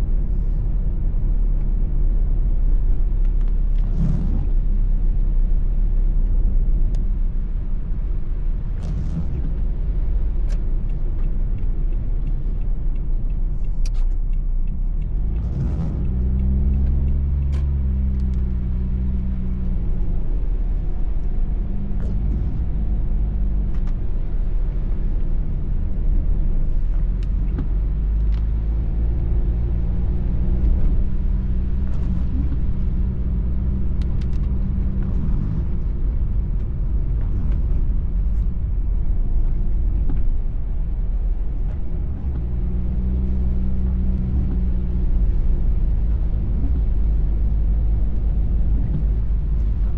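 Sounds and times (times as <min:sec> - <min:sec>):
car engine and tyre rumble: 0:00.0 - 0:49.9
light ticks: 0:08.7 - 0:49.9.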